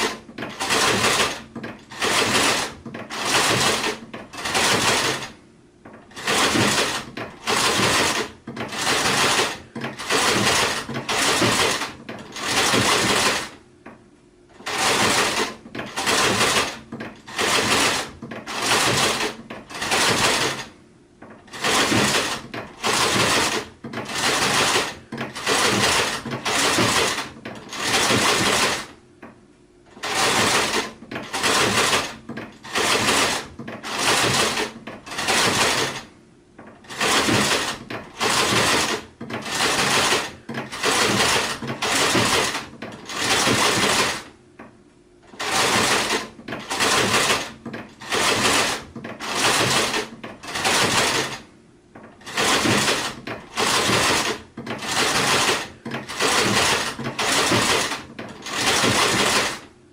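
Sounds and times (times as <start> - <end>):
sewing machine stitching: 0.0 - 13.6, 14.5 - 29.0, 29.9 - 44.4, 45.2 - 59.7.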